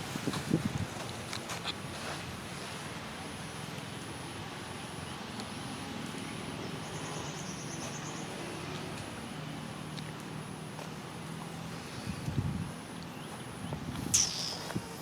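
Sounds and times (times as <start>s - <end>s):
insect pulsed trill: 14.1s - 15.0s.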